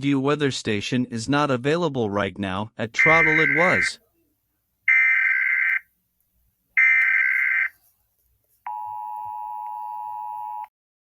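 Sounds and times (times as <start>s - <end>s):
screechy digital header data: 3.0s - 4.0s
steady electronic alert tone: 3.0s - 4.0s.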